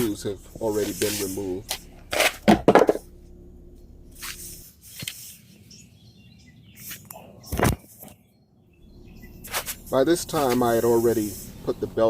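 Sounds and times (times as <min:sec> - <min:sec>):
knocks and scrapes: 0:00.0 - 0:03.1, 0:09.4 - 0:11.6.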